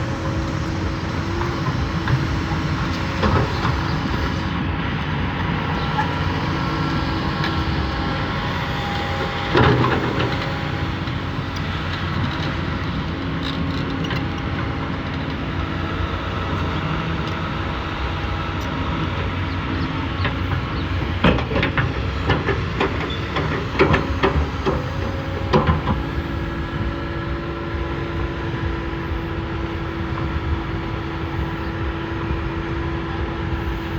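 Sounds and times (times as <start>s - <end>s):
heavy diesel engine running: 0.0s - 33.9s
metallic track clanks: 18.6s - 32.4s.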